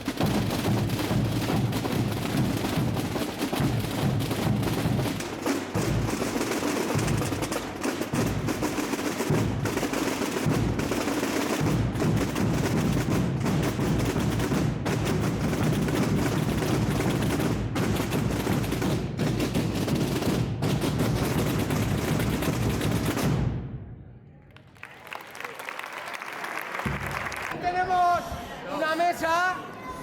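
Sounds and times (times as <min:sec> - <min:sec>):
massed drums rolling: 0:00.0 - 0:23.8.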